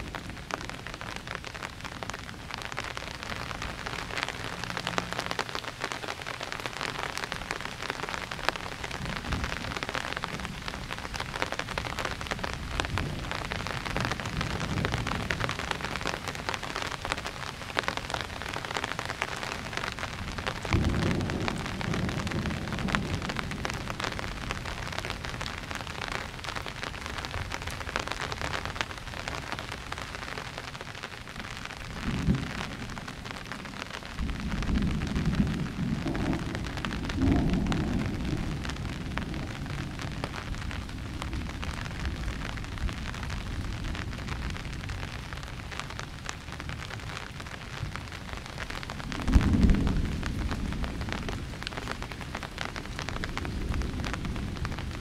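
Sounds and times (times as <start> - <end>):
rain falling: 0.0 - 55.0
thunder rumbling: 6.6 - 28.5, 31.3 - 45.6, 47.8 - 55.0.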